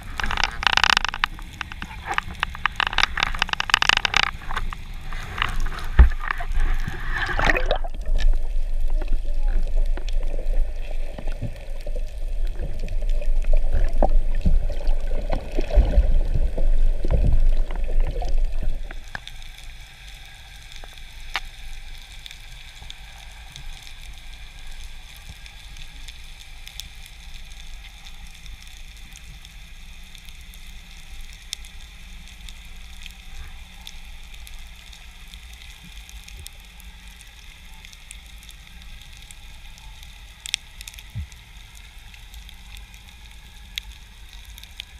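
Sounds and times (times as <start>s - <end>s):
underwater churning rumble: 0.0s - 25.5s
faint underwater clicking crackle: 0.0s - 44.9s.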